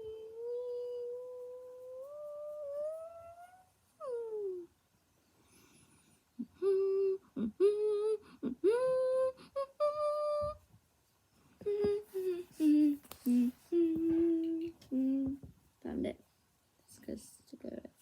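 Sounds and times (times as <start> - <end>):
woman humming: 0.0 - 4.8, 6.4 - 10.6, 11.6 - 15.5.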